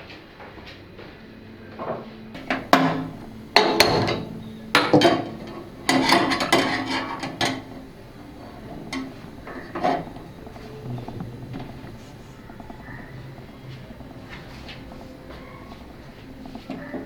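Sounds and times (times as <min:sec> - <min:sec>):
faint steady hum: 0:01.1 - 0:17.0
kitchen knocks and scraping: 0:02.4 - 0:15.0.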